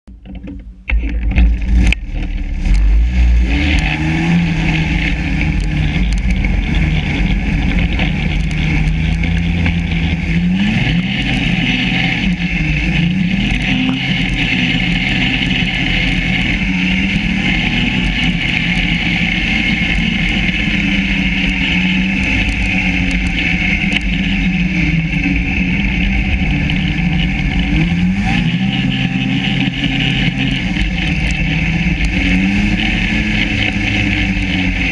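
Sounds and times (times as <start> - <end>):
snowmobile engine revving: 1.2 - 34.9.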